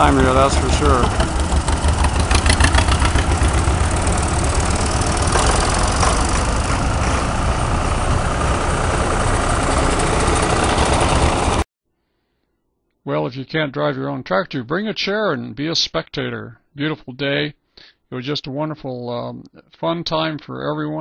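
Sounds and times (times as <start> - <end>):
tractor engines droning: 0.0 - 11.6.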